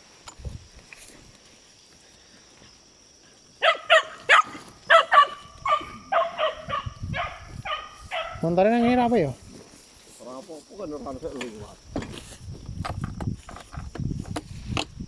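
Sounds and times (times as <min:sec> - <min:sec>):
dogs barking: 0:03.6 - 0:09.2.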